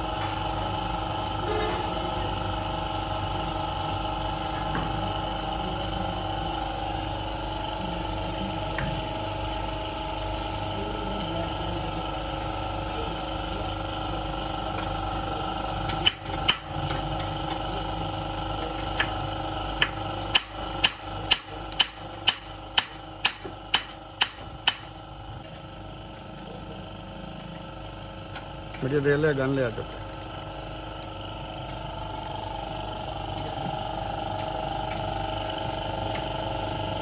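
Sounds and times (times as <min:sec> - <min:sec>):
steady machine hum: 0:00.0 - 0:37.0
hammer striking metal: 0:19.8 - 0:24.9.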